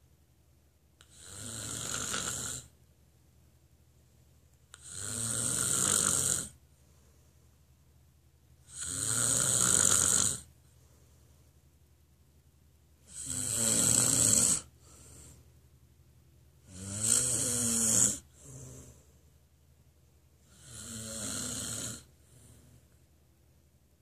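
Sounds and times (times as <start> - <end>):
person snoring: 1.0 - 2.7, 4.8 - 6.6, 8.6 - 10.5, 13.0 - 15.4, 16.6 - 19.0, 20.4 - 22.6
faint breath: 6.7 - 7.8, 10.6 - 11.7, 14.7 - 15.7, 18.2 - 19.5, 22.1 - 23.0.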